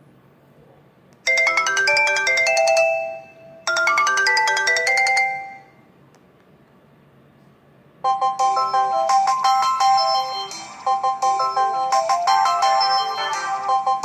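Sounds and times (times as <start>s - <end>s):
phone ringtone melody: 1.3s - 5.8s, 8.0s - 14.0s.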